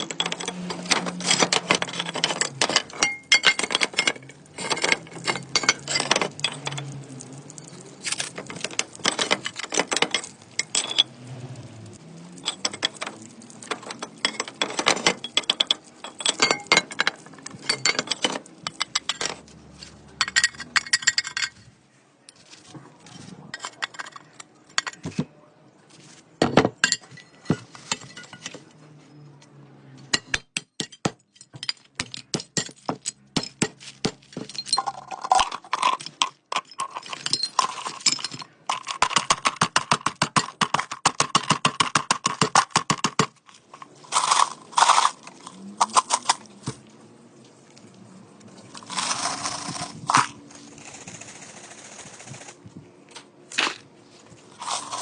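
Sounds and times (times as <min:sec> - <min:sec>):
clay tile pieces clinking: 0:00.0 - 0:11.1, 0:31.0 - 0:46.6, 0:48.7 - 0:50.4, 0:54.5 - 0:55.0.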